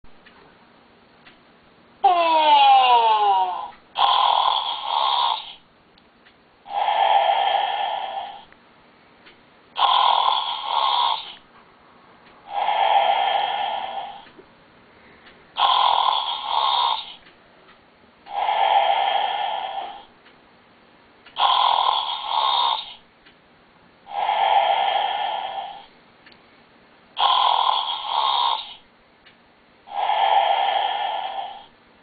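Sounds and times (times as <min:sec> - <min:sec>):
toy snoring through small speaker: 0:02.0 - 0:05.6, 0:06.6 - 0:08.5, 0:09.8 - 0:11.4, 0:12.4 - 0:14.3, 0:15.6 - 0:17.3, 0:18.3 - 0:20.2, 0:21.3 - 0:23.1, 0:24.0 - 0:25.9, 0:27.2 - 0:28.9, 0:29.8 - 0:31.8.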